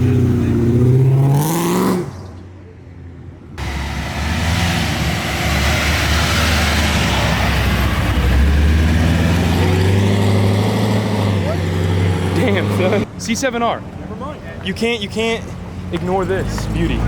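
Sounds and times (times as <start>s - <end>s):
car engine driving off: 3.6s - 13.0s.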